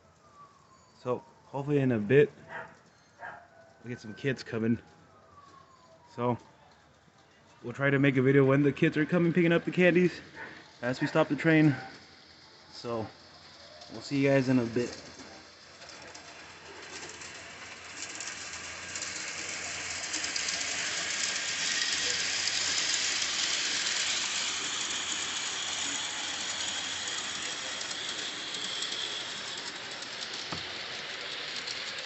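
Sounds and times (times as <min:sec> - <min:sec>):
model train clattering on track: 0:09.0 - 0:32.0.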